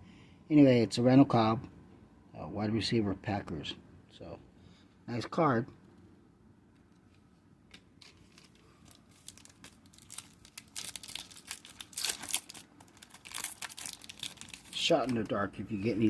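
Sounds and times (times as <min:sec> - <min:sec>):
wrapper tearing and crinkling: 0:07.7 - 0:15.4.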